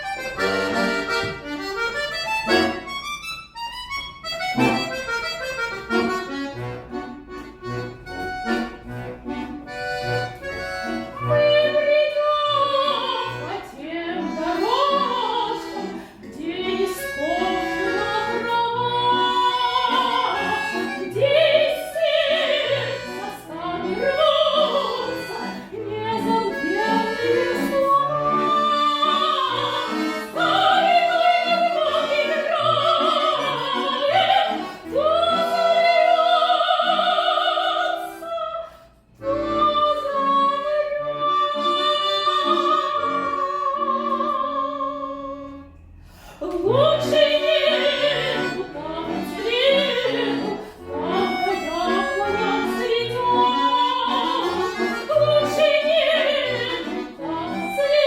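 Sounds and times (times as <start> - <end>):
button accordion chords: 0.0 - 58.0
woman singing classical piece: 11.0 - 58.0.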